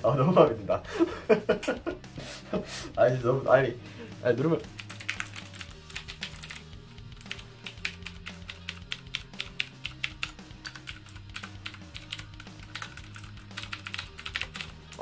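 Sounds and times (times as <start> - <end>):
mechanical keyboard typing: 4.8 - 6.6, 7.2 - 15.0.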